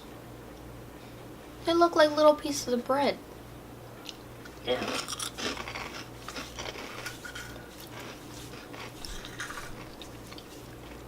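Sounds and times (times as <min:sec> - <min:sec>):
crunching dry snacks: 0:04.7 - 0:11.0.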